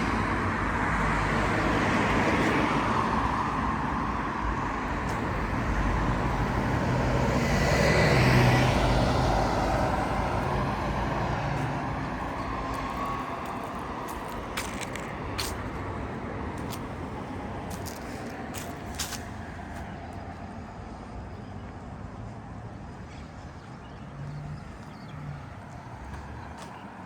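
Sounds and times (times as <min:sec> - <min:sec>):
vehicle passing: 0:00.0 - 0:19.6
traffic hum: 0:00.0 - 0:27.0.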